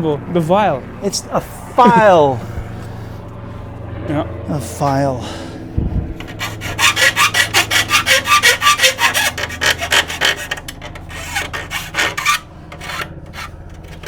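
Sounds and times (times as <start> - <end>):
hand file rasping on edge: 6.2 - 14.0.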